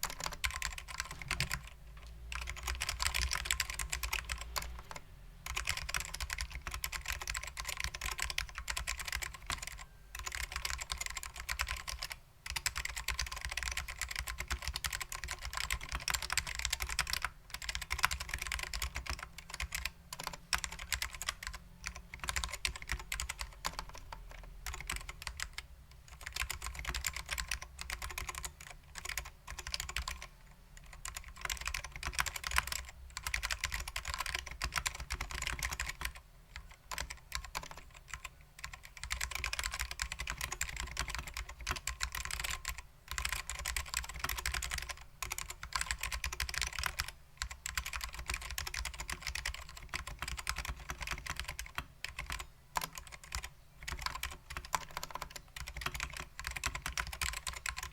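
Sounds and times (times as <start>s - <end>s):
fast typing on clicky keyboard: 0.0s - 57.9s.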